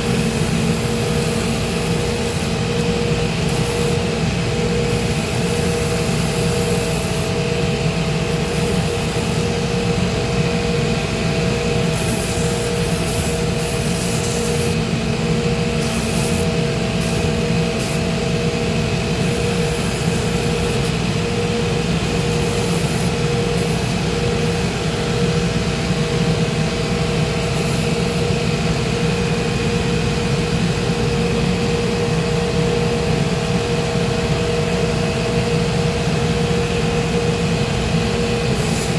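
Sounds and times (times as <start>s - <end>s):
machine motor hum: 0.0s - 31.6s
sanding wheel grinding: 22.0s - 24.8s.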